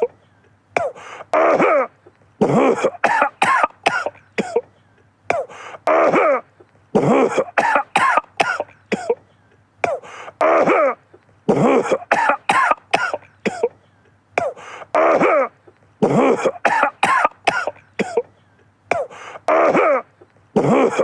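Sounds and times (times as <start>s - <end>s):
man coughing: 0.0s - 21.0s.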